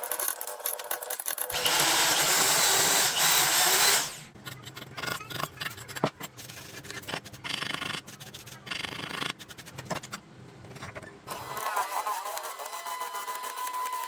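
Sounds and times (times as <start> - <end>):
power tool running with hissing noise: 1.6 - 4.3.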